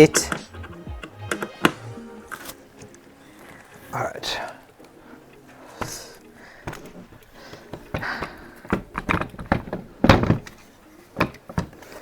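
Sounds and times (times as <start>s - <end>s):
plastic and metal parts clunking: 5.7s - 12.0s.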